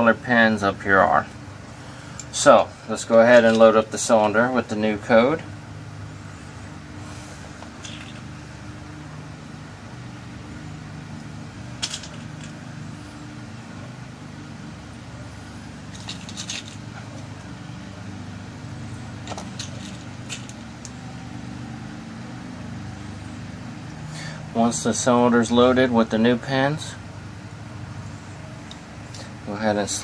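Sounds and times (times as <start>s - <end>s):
steady low hum: 0.0s - 30.0s
small metal clicks: 15.9s - 16.9s.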